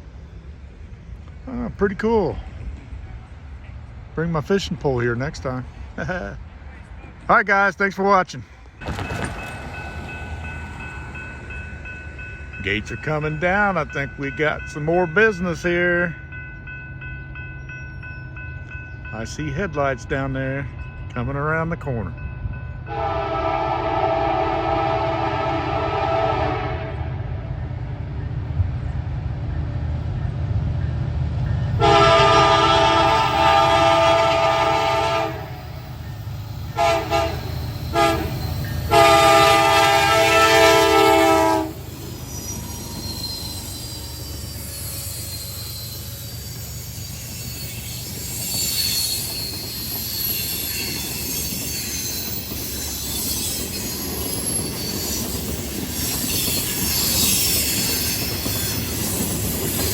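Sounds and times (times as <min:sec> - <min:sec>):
freight train rumbling past: 0:00.0 - 0:59.9
locomotive horn blasts: 0:22.9 - 0:27.2, 0:31.8 - 0:35.6, 0:36.8 - 0:41.9
faint train wheel squeal: 0:35.4 - 0:39.0, 0:41.8 - 0:59.9.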